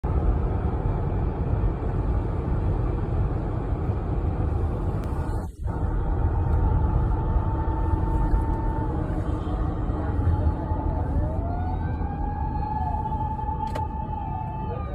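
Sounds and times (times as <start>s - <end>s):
road traffic rumbling: 0.0s - 14.9s
faint fire engine siren: 5.2s - 14.9s.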